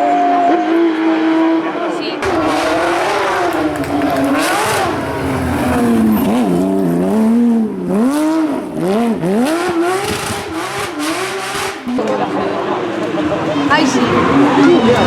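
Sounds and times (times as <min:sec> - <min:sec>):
racing engine at high revs: 0:00.0 - 0:15.0.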